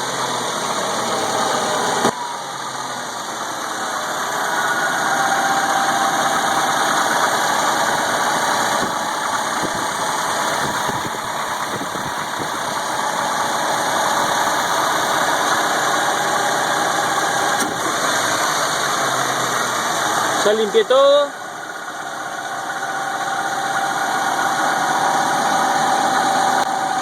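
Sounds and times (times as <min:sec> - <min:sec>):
car engine running: 0:00.0 - 0:27.0.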